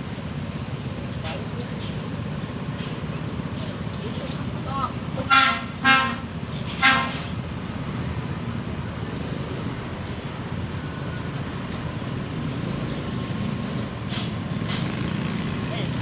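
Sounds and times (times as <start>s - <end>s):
low rumble of road traffic: 0.0s - 16.0s.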